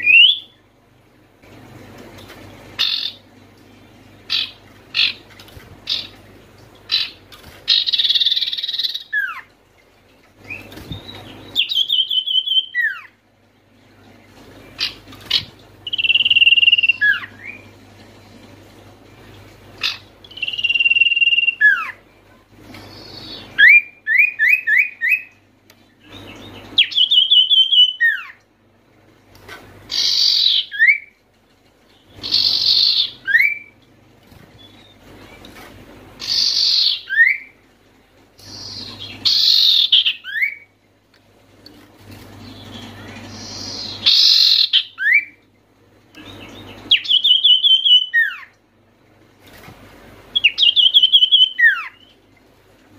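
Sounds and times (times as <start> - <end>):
bird calling with whistled phrases: 0.0 - 0.6, 10.5 - 13.2, 14.8 - 17.7, 19.8 - 22.0, 22.8 - 25.4, 26.0 - 28.4, 29.9 - 31.2, 32.2 - 33.8, 36.2 - 37.6, 38.4 - 40.7, 42.4 - 45.4, 46.2 - 48.6, 50.3 - 52.2.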